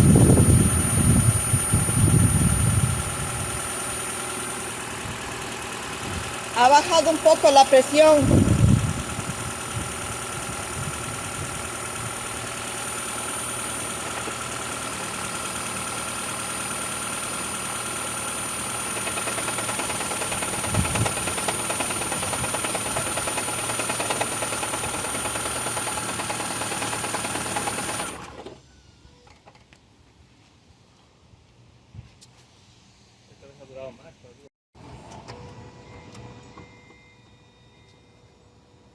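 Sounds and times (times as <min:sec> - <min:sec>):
car engine clattering: 0:00.4 - 0:28.3.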